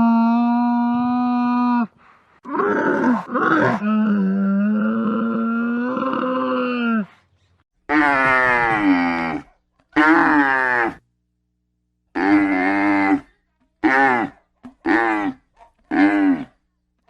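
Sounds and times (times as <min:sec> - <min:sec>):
camel gurgling grunt: 0:02.5 - 0:06.8.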